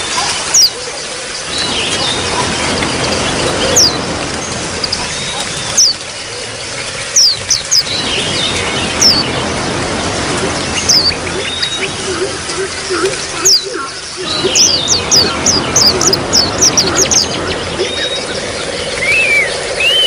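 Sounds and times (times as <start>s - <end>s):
water trickling: 0.0s - 20.0s
high downward-sliding bird chirps: 10.8s - 20.0s.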